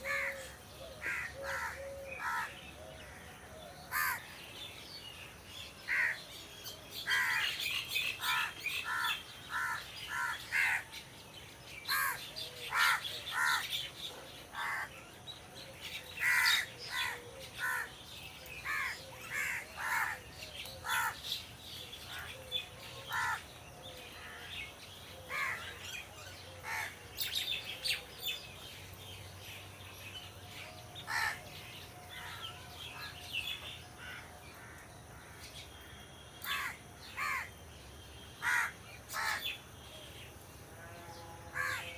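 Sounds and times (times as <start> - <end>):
crows cawing: 1.0 - 3.3, 3.9 - 4.3, 5.9 - 6.2, 8.2 - 10.9, 11.9 - 13.6, 16.2 - 17.9, 18.7 - 20.2, 20.8 - 21.2, 23.1 - 23.4, 26.6 - 27.0, 31.1 - 31.4, 36.4 - 37.5, 38.4 - 39.5, 41.5 - 41.9.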